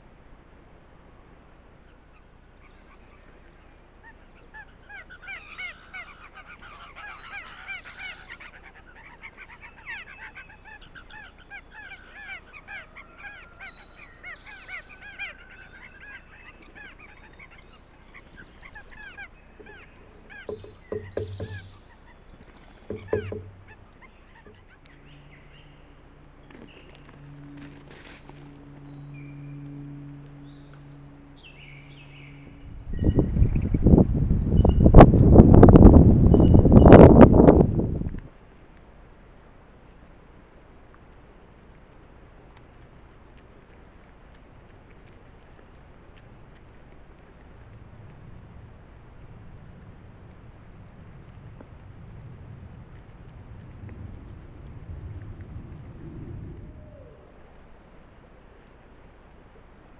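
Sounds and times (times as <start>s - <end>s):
birds calling: 1.9s - 35.0s, 36.1s - 37.2s
dull thumps: 19.6s - 21.8s, 22.8s - 23.8s.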